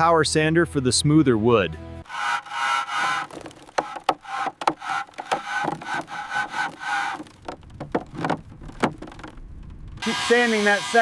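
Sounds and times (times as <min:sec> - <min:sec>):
hand tool scraping wood: 0:02.1 - 0:09.3, 0:10.0 - 0:11.0.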